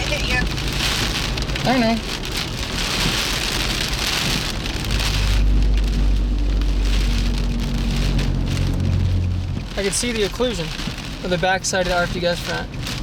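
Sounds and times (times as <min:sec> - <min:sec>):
deep low rumble: 0:00.0 - 0:13.0
heavy rain drumming on a car: 0:00.0 - 0:13.0.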